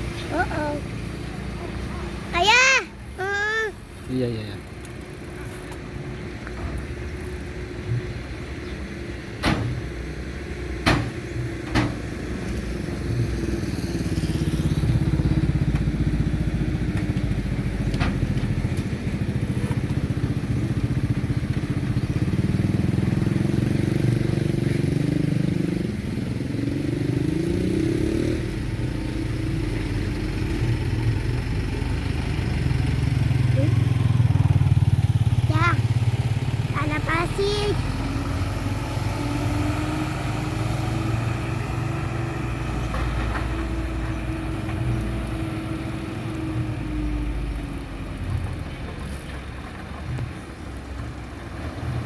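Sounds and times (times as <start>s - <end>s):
large vehicle engine revving: 9.8s - 52.0s
sharp knocks: 10.8s - 12.0s.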